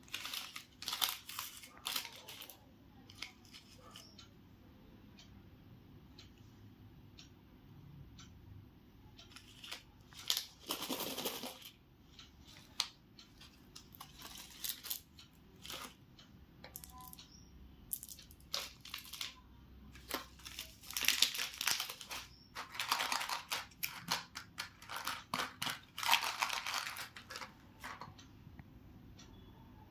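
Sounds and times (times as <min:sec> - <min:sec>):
wrappers crinkling and tearing: 0:00.0 - 0:02.6, 0:20.0 - 0:27.5.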